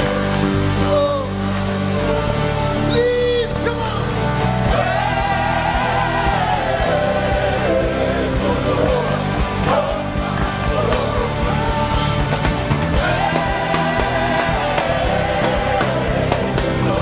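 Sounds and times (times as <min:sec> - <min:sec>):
band playing with drums: 0:04.7 - 0:17.0.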